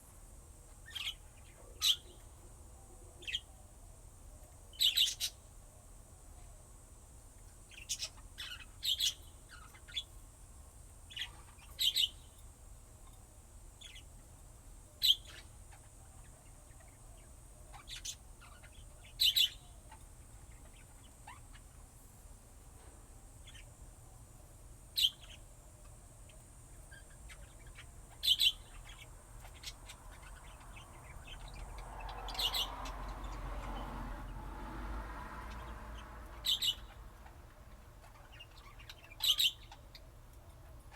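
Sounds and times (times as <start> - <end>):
lovebirds chirping: 0.8 - 2.4, 4.4 - 5.5, 7.7 - 10.2, 11.1 - 14.3, 15.0 - 22.0, 23.4 - 24.2, 24.9 - 34.4, 35.4 - 40.9.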